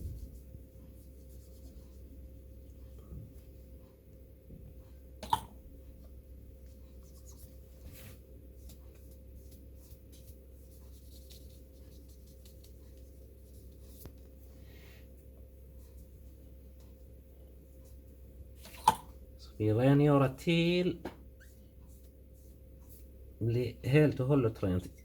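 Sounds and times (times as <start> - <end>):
paper rubbing a phone screen: 0.0 - 2.1, 7.0 - 14.1
steady low hum: 0.0 - 25.0.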